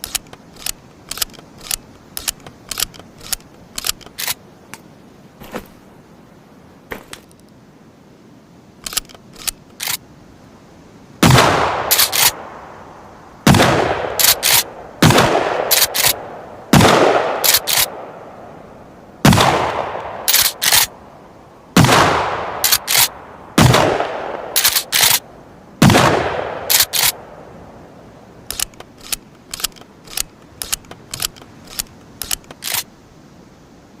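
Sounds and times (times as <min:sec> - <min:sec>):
pump action racking clicks: 0:00.0 - 0:04.4, 0:24.6 - 0:25.2, 0:28.5 - 0:32.8
shotgun shots: 0:11.2 - 0:12.4, 0:13.5 - 0:18.0, 0:19.2 - 0:20.9, 0:21.8 - 0:25.2, 0:25.8 - 0:27.2.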